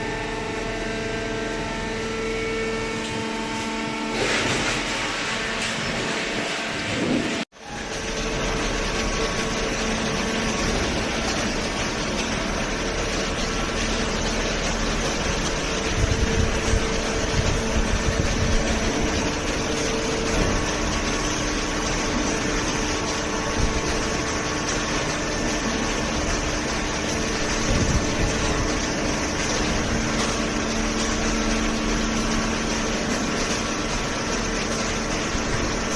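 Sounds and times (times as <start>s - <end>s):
hydraulic baling press running: 0.0s - 35.9s.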